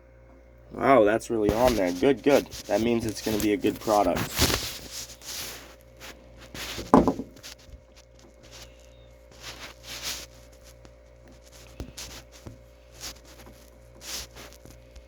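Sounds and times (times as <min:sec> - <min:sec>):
faint steady hum: 0:00.0 - 0:15.0
hands rubbing and rustling: 0:01.4 - 0:15.0
short bump: 0:06.6 - 0:07.6.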